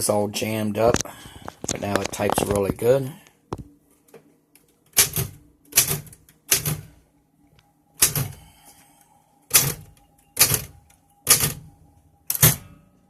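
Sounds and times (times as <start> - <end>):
typewriter keystrokes clacking: 5.0 - 6.8, 9.5 - 10.7, 11.3 - 11.6.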